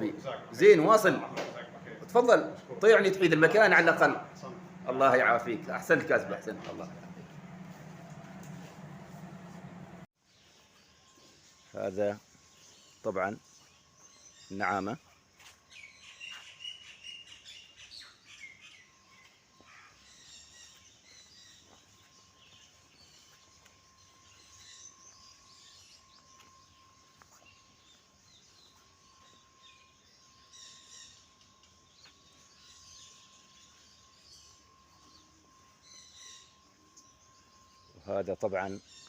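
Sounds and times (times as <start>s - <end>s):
thin high whine: 0.0s - 10.1s, 18.1s - 39.0s
small birds chirping: 0.0s - 39.0s.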